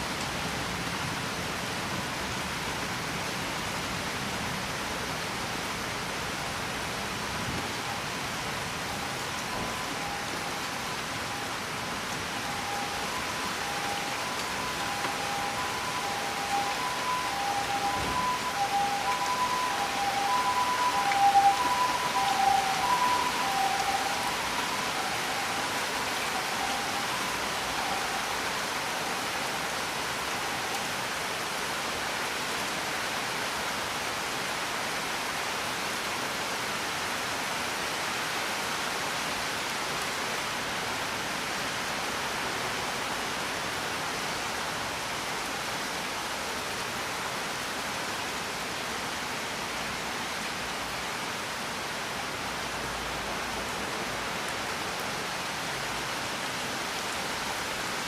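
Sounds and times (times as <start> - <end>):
rain pouring: 0.0 - 58.0
faint high tones: 12.3 - 29.6.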